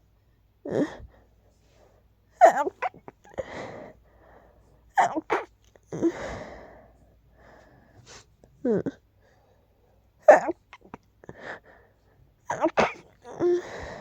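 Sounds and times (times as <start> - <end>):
person sneezing: 2.4 - 3.2, 5.0 - 6.1, 12.5 - 13.6.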